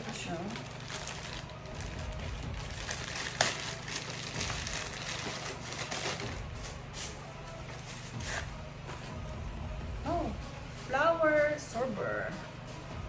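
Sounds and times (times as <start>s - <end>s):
packaging rustling and crinkling: 0.0s - 9.2s.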